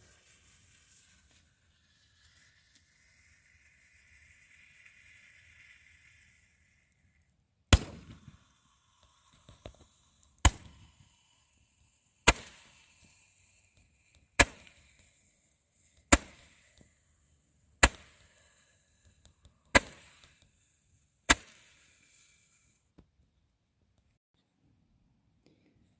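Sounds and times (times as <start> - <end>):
firework hiss: 0.0 - 22.8
firework bangs: 7.7 - 9.8, 10.4 - 11.2, 12.2 - 13.1, 19.7 - 20.3.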